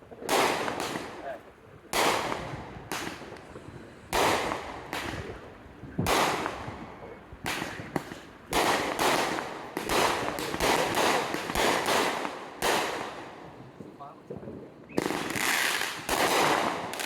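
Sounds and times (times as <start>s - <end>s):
fireworks exploding: 0.0s - 17.0s.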